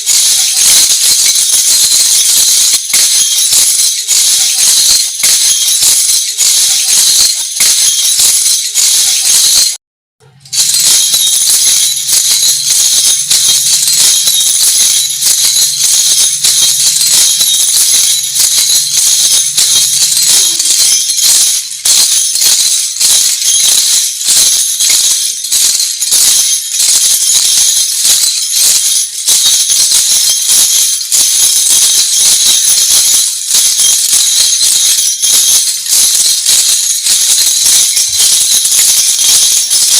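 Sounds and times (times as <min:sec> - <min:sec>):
metal jingles jangling: 0:00.0 - 0:39.9.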